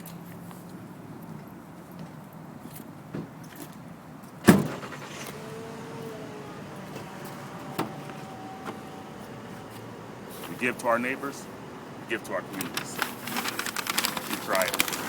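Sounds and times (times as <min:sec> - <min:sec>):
vehicle door slamming: 0:04.4 - 0:05.6, 0:06.3 - 0:11.9.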